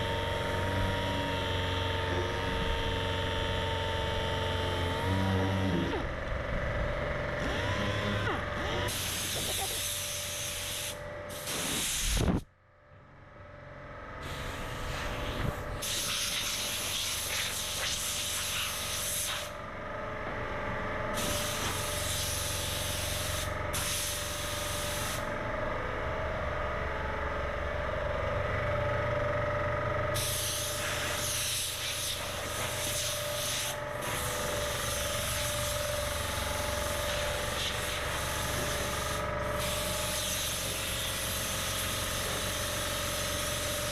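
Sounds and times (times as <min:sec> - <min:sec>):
steady machine hum: 0:00.0 - 0:43.9
sandpaper sanding metal: 0:15.8 - 0:19.5, 0:30.2 - 0:35.5, 0:37.5 - 0:43.9.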